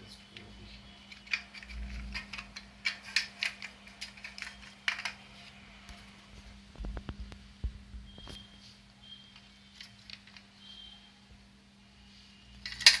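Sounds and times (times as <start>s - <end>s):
low electrical hum: 0.0s - 13.0s
small hard objects clicking and rattling: 1.1s - 5.2s.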